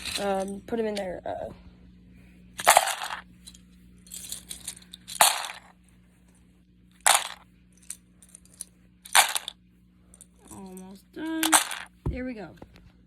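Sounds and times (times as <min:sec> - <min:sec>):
plastic keycaps clattering into bowl: 0:00.0 - 0:01.1, 0:02.6 - 0:05.7, 0:07.1 - 0:09.6, 0:10.2 - 0:11.9.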